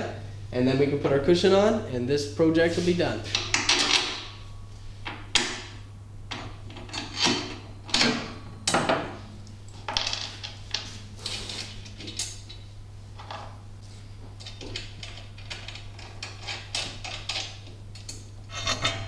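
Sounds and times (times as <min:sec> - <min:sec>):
metal parts clanking and scraping: 0:18.5 - 0:19.0.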